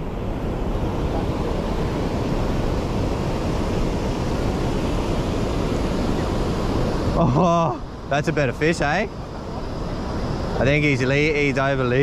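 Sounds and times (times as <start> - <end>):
wind rushing over microphone: 0.0 - 12.0.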